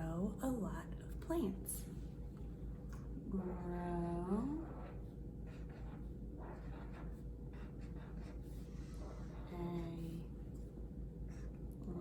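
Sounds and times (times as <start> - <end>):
pen scratching on paper: 4.5 - 10.7.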